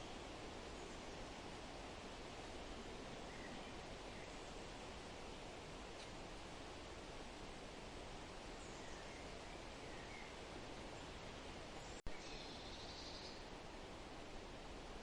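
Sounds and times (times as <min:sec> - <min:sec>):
leaves rustling in wind: 0:00.0 - 0:15.0
soft bird chirps: 0:08.6 - 0:10.4, 0:11.8 - 0:13.5.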